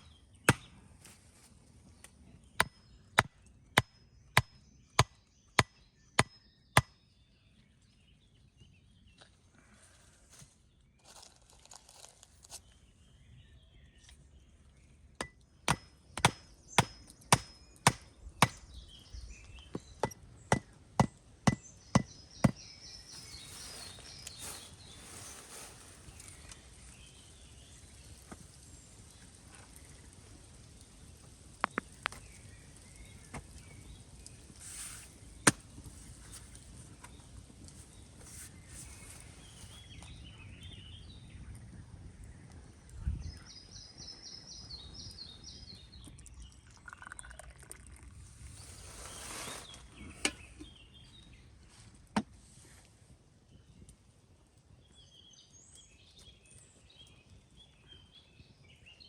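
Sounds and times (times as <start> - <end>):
axe chopping wood: 0.0 - 0.8, 2.6 - 7.0, 15.2 - 18.6, 35.4 - 35.6
rustling: 23.1 - 27.0, 48.4 - 50.6.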